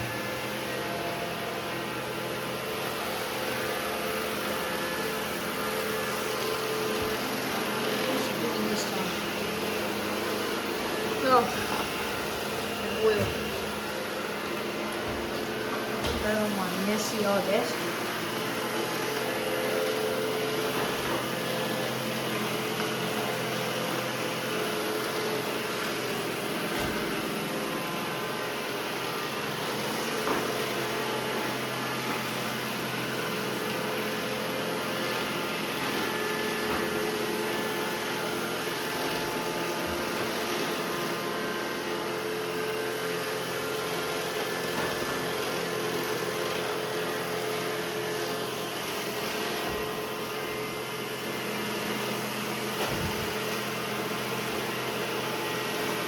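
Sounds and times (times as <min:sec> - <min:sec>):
robot vacuum whirring: 0:01.6 - 0:37.6.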